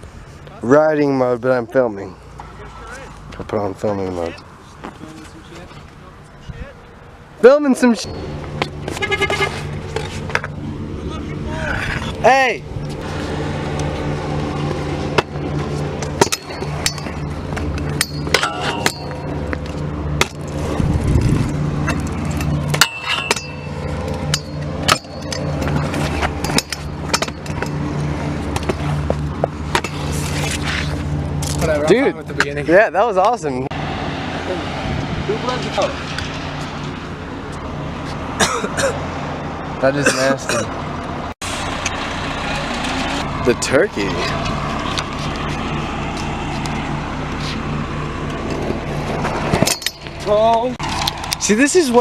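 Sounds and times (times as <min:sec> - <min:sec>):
car engine humming: 0:00.0 - 0:52.0
road noise: 0:00.0 - 0:52.0
steady low drone: 0:08.0 - 0:32.7, 0:40.5 - 0:52.0.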